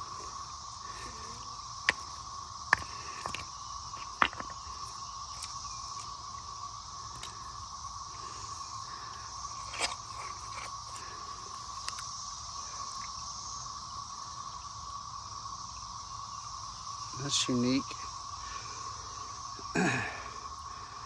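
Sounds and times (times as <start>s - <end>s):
cicadas droning: 0.0s - 21.0s.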